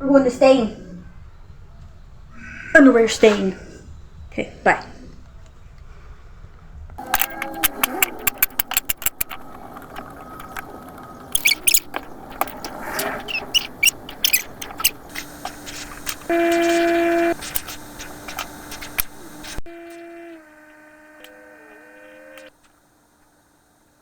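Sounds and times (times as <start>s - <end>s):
sharp clicks and taps: 7.0s - 20.0s
vehicle horn: 7.0s - 22.5s.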